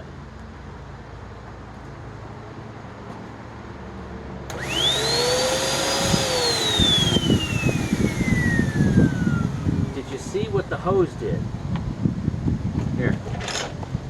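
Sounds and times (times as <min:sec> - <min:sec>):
vacuum cleaner switch click: 0:04.5 - 0:10.1
vacuum cleaner motor whine: 0:04.5 - 0:10.7.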